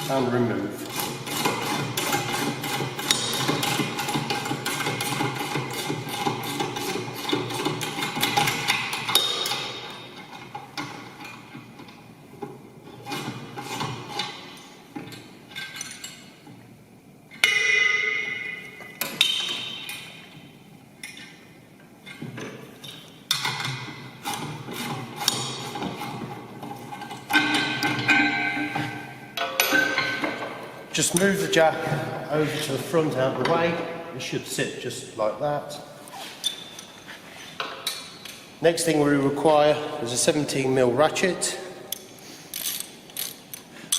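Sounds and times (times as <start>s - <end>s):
metal tools clinking: 15.0s - 16.4s, 27.0s - 30.5s, 36.4s - 37.1s, 42.5s - 43.7s.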